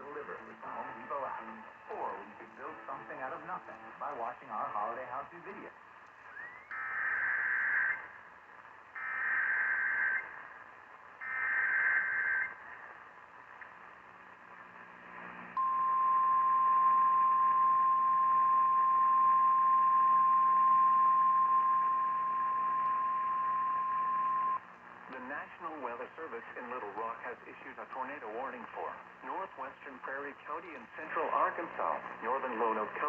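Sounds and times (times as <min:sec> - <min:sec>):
steady single-pitched attention tone: 0:15.6 - 0:24.6.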